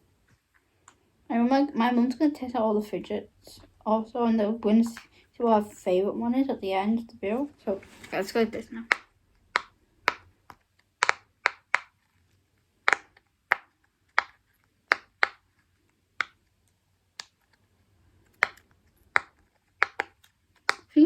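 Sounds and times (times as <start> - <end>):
plastic fidget toy clicking: 8.8 - 12.0, 12.8 - 15.5, 16.2 - 17.4, 18.3 - 21.0.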